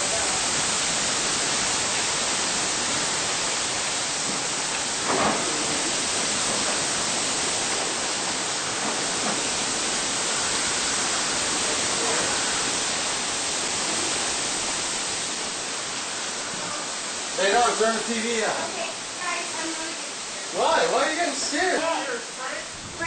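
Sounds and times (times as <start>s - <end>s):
storm wind and rain: 0.0s - 23.0s.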